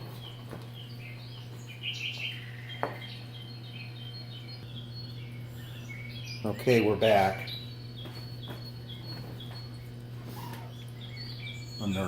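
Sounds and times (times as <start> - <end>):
small birds chirping: 0.0 - 12.0
steady low hum: 0.0 - 12.0
upward-sweeping bird chirp: 0.1 - 12.0.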